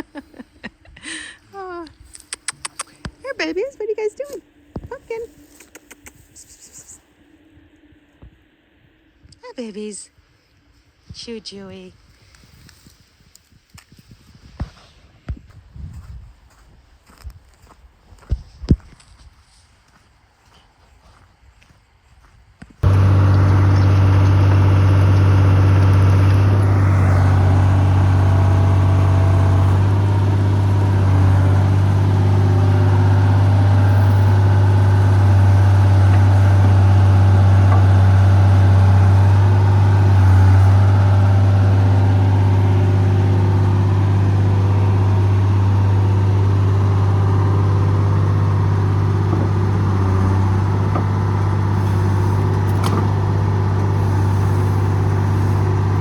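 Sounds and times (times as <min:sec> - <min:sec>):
excavator diesel engine running: 0:22.8 - 0:56.0.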